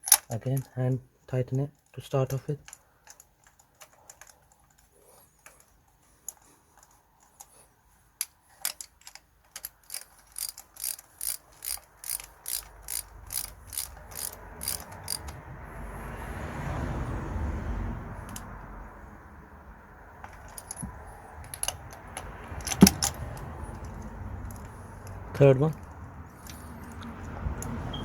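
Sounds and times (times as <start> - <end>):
socket ratchet clicking: 0.0 - 0.3, 8.2 - 15.5, 18.2 - 18.5, 20.2 - 27.8.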